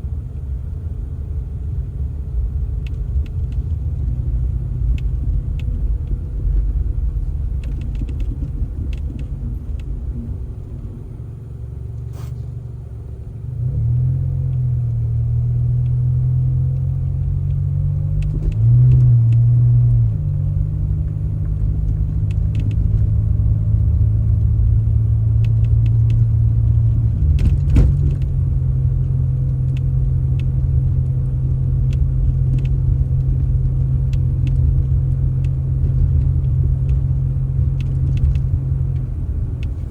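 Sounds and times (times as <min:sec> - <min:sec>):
vehicle engine rumbling: 0:00.0 - 0:39.9.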